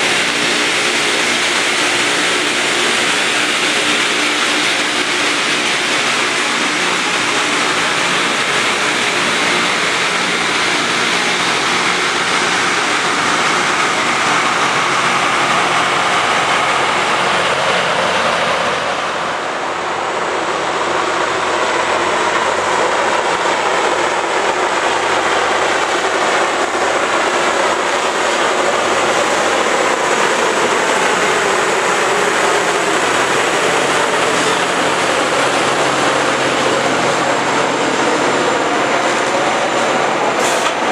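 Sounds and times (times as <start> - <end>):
diesel engines humming: 0.0 - 40.9
grinding stones hissing on rail: 0.0 - 40.9.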